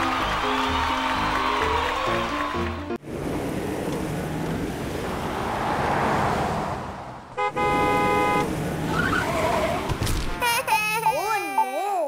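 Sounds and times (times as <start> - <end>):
horn toot: 7.4 - 8.5.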